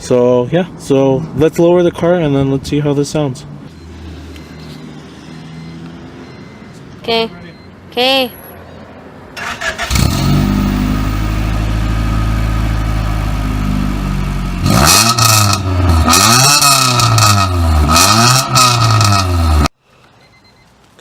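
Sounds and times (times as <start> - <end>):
car engine idling and revving: 3.4 - 19.8
engine cranking: 9.4 - 10.1.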